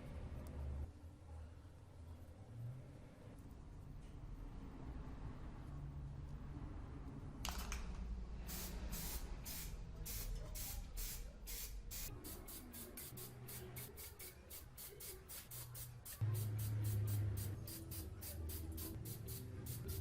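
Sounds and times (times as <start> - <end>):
spray paint hissing bursts: 8.5 - 20.0.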